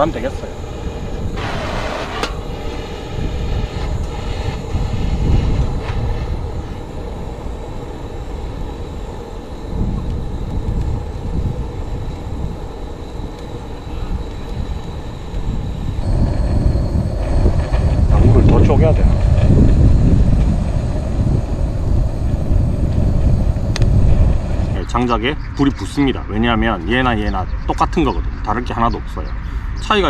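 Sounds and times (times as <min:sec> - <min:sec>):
gas torch flame rushing: 0:00.0 - 0:24.8.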